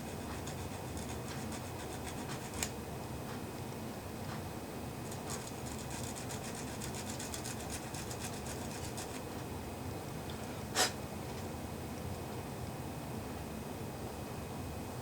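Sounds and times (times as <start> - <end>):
hand file rasping on metal: 0.0 - 2.7, 5.3 - 9.2.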